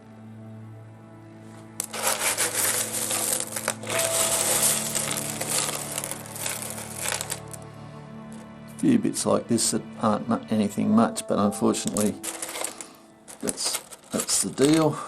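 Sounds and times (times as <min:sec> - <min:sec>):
stones rattling and clinking: 0:01.8 - 0:07.6, 0:11.8 - 0:15.0.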